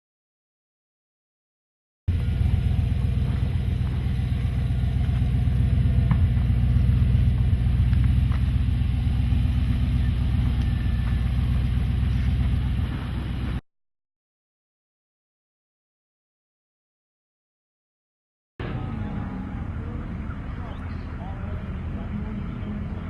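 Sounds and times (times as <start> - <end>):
vehicle engine running: 2.1 - 13.6, 18.6 - 23.0.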